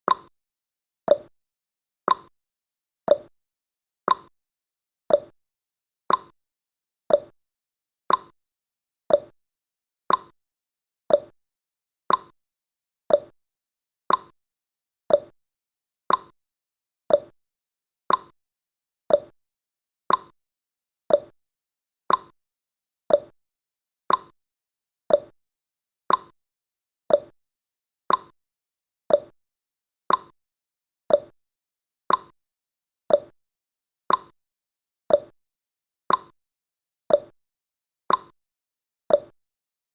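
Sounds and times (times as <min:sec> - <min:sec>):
timer ticking: 0:00.1 - 0:00.3, 0:01.1 - 0:01.3, 0:02.1 - 0:02.3, 0:03.1 - 0:03.3, 0:04.1 - 0:04.3, 0:05.1 - 0:05.3, 0:06.1 - 0:06.3, 0:07.1 - 0:07.4, 0:08.1 - 0:08.3, 0:09.1 - 0:09.3, 0:10.1 - 0:10.3, 0:11.1 - 0:11.4, 0:12.1 - 0:12.3, 0:13.1 - 0:13.4, 0:14.1 - 0:14.3, 0:15.1 - 0:15.4, 0:16.1 - 0:16.3, 0:17.1 - 0:17.4, 0:18.1 - 0:18.3, 0:19.1 - 0:19.4, 0:20.1 - 0:20.4, 0:21.1 - 0:21.4, 0:22.1 - 0:22.3, 0:23.1 - 0:23.4, 0:24.1 - 0:24.3, 0:25.1 - 0:25.4, 0:26.1 - 0:26.4, 0:27.1 - 0:27.4, 0:28.1 - 0:28.4, 0:29.1 - 0:29.4, 0:30.1 - 0:30.4, 0:31.1 - 0:31.4, 0:32.1 - 0:32.4, 0:33.1 - 0:33.4, 0:34.1 - 0:34.4, 0:35.1 - 0:35.4, 0:36.1 - 0:36.4, 0:37.1 - 0:37.4, 0:38.1 - 0:38.4, 0:39.1 - 0:39.4.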